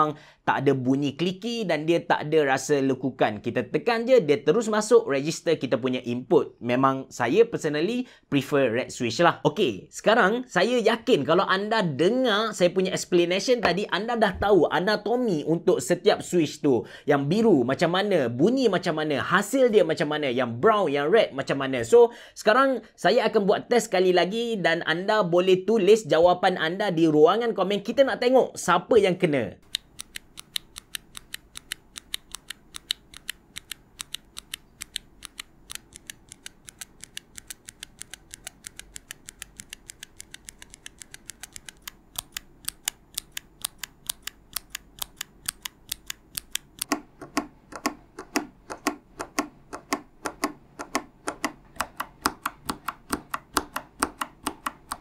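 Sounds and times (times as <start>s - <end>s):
mechanical keyboard switch clicks: 29.6s - 55.0s.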